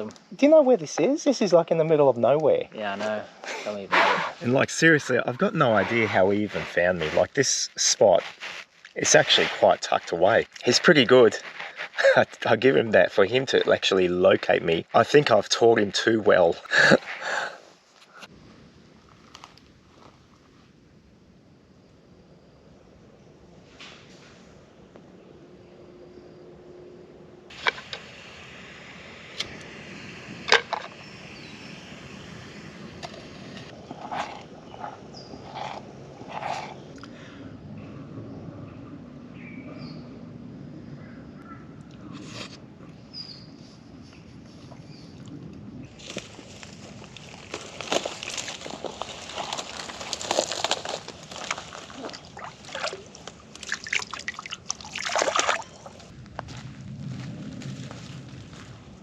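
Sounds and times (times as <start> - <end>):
steady hiss: 0.0 - 22.0, 27.5 - 34.4
animal calling roughly: 3.9 - 4.4
water sloshing and splashing: 47.2 - 56.1.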